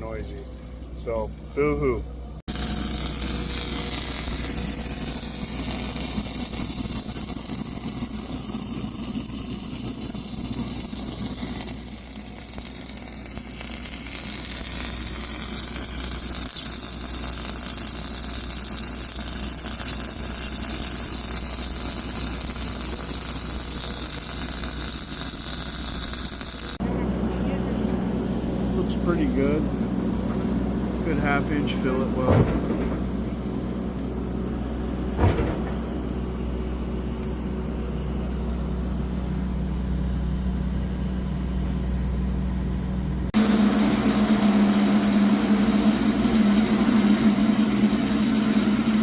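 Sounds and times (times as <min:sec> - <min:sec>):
air blower rushing in pipe: 0:26.8 - 0:37.7.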